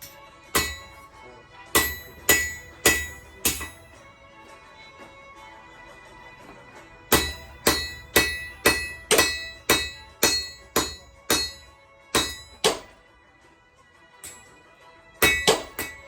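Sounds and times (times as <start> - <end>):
hammer striking steel on anvil: 0.0 - 4.1, 7.1 - 13.0, 14.2 - 14.6, 15.2 - 16.0.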